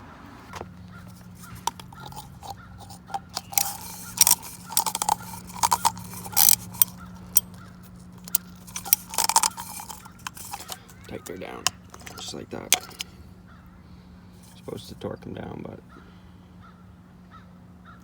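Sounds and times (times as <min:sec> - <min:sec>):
steady low hum: 0:00.6 - 0:17.8
socket ratchet clicking: 0:01.0 - 0:13.1.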